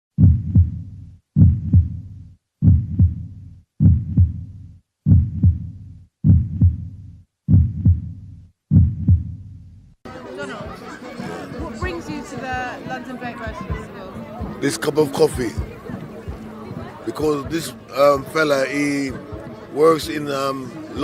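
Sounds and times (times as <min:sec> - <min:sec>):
heartbeat double thump: 0:00.1 - 0:09.8, 0:11.6 - 0:14.6, 0:15.4 - 0:16.9.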